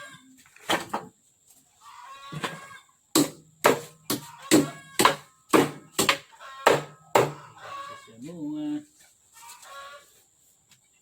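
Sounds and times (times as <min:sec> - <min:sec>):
chickens clucking: 0:00.0 - 0:03.1, 0:04.1 - 0:05.2, 0:06.2 - 0:11.0
hammering on metal: 0:03.2 - 0:07.4.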